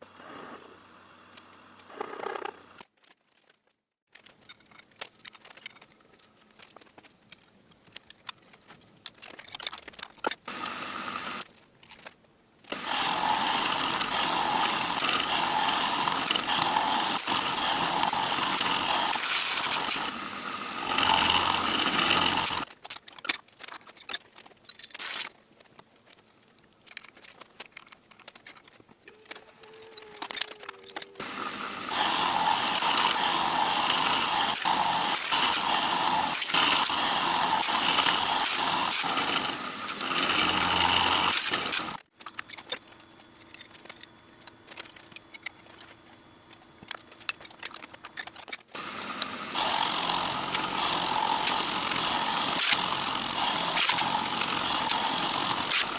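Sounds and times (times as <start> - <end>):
machine tool cutting steel: 10.4 - 11.4, 12.7 - 22.7, 29.1 - 42.0, 48.8 - 55.9.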